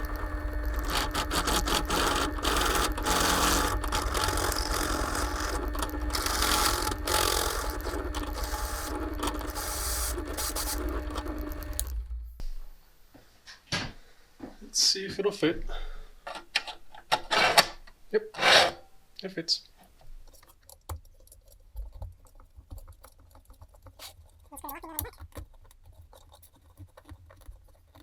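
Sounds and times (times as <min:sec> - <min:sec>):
electric drill cutting sheet metal: 0:00.0 - 0:12.3.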